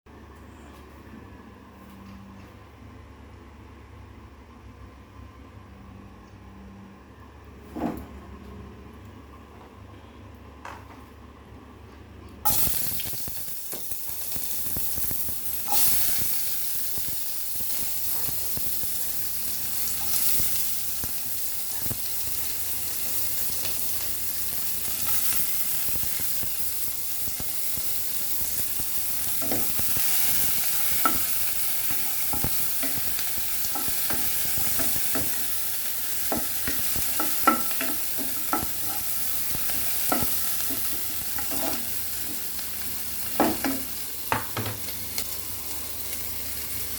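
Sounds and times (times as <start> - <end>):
food sizzling in hot oil: 12.5 - 46.9.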